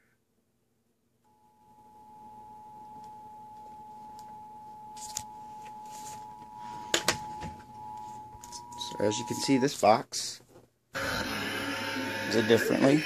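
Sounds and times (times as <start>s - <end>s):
two-tone alert signal: 5.8s - 9.6s.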